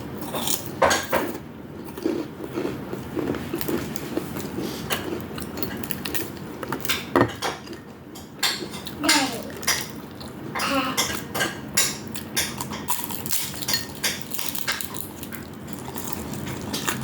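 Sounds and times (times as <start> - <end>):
chewing fried food: 0.2 - 17.0
cutlery clicking on dishes: 6.8 - 10.0, 10.6 - 15.0.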